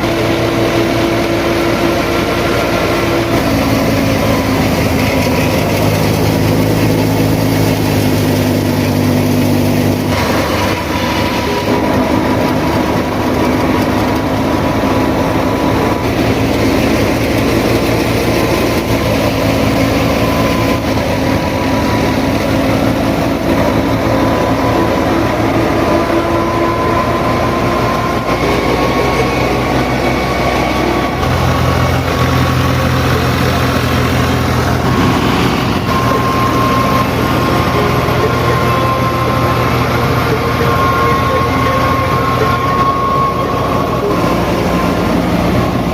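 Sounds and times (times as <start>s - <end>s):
vehicle engine rattling and rumbling: 0.0s - 45.9s.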